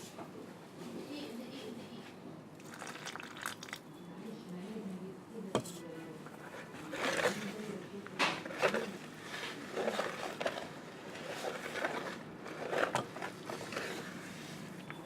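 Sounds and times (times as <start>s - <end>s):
utensil scraping and knocking bowl: 5.5s - 14.4s.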